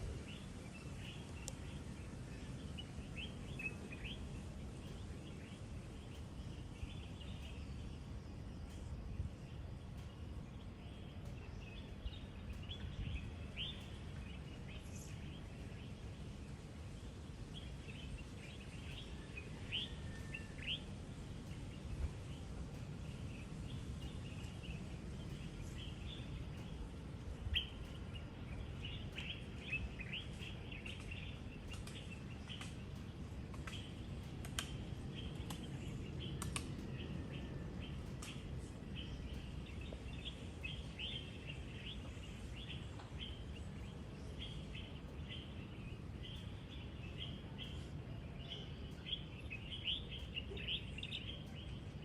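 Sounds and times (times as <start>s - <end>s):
small birds chirping: 0.0s - 52.0s
steady low rumble: 0.0s - 52.0s.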